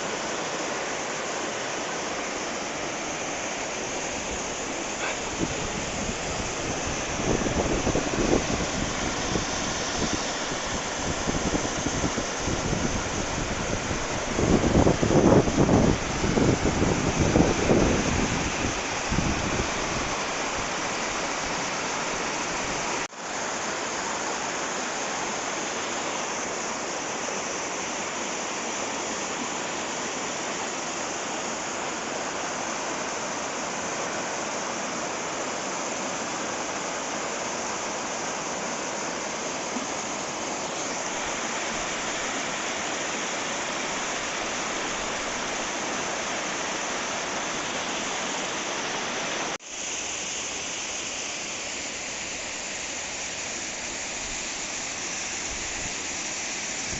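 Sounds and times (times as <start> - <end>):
stream rushing over rocks: 0.0 - 56.9
wind buffeting microphone: 5.2 - 20.6.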